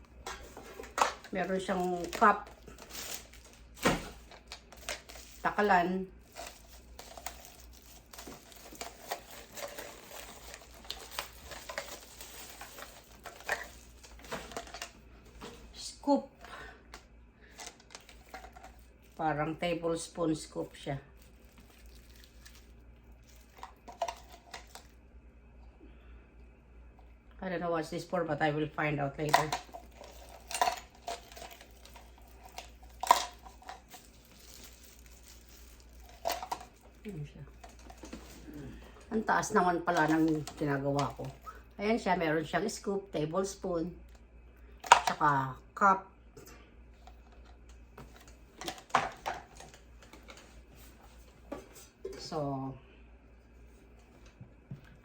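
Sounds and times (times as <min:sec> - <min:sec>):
plastic packaging crinkling: 0:00.3 - 0:15.4, 0:17.5 - 0:19.2, 0:20.6 - 0:25.0, 0:29.2 - 0:38.5.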